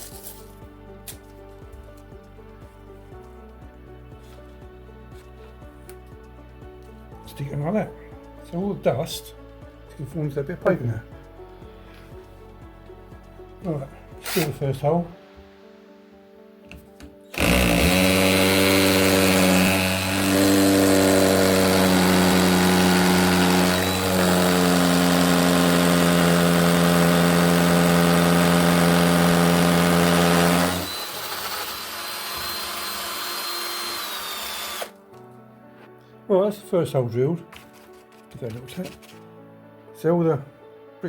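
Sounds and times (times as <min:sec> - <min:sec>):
electric drill boring into brick: 0:14.2 - 0:14.6, 0:17.3 - 0:35.0.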